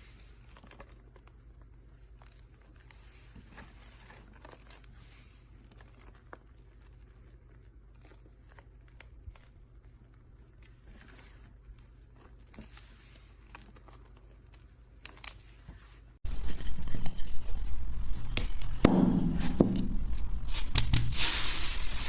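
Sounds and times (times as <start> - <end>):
low hum: 16.2 - 22.0.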